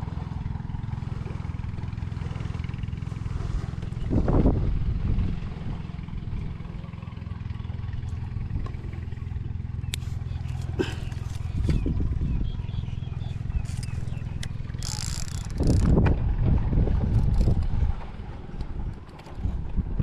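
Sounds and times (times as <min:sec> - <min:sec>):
small engine droning: 0:00.0 - 0:20.0
sharp clicks: 0:13.7 - 0:16.0.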